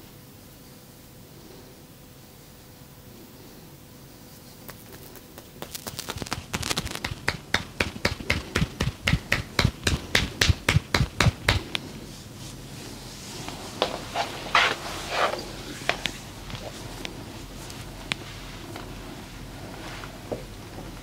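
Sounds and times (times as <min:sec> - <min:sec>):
hands striking body: 0:04.7 - 0:11.8.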